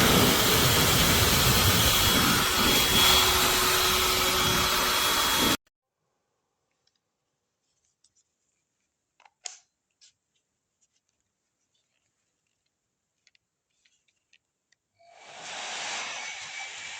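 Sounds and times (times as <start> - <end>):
hair dryer running: 0.0 - 5.6.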